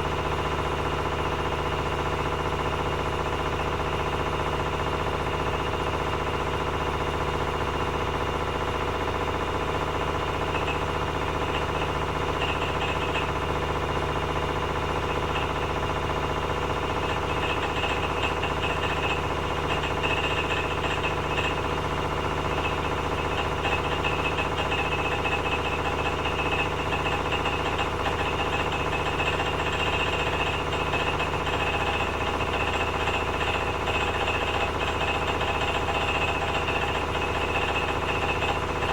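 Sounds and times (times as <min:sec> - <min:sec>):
fast knocking inside machine: 0:08.3 - 0:38.9
washing machine motor hum: 0:09.8 - 0:38.9.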